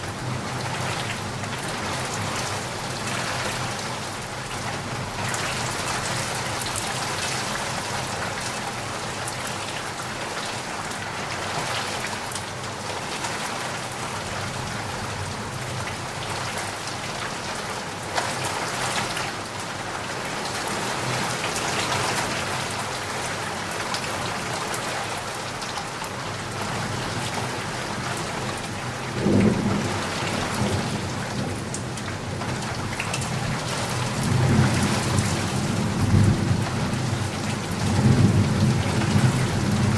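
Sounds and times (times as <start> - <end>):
steady rain: 0.0 - 39.9.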